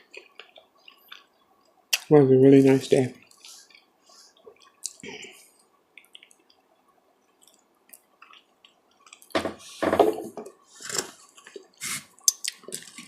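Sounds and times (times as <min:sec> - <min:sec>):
wet chewing and lip smacking: 0:03.3 - 0:05.0, 0:05.9 - 0:06.7, 0:07.3 - 0:09.3, 0:12.2 - 0:13.0.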